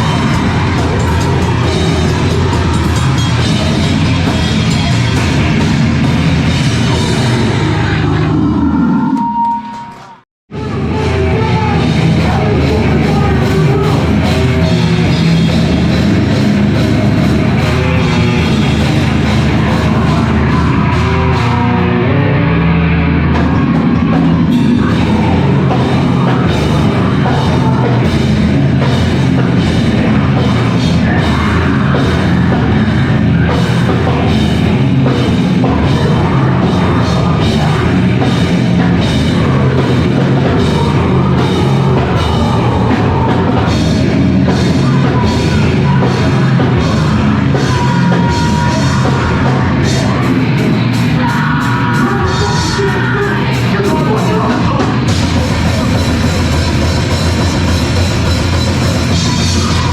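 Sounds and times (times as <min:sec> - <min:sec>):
cymbals: 0:00.0 - 0:07.8
band playing heavy rock: 0:00.0 - 0:59.9.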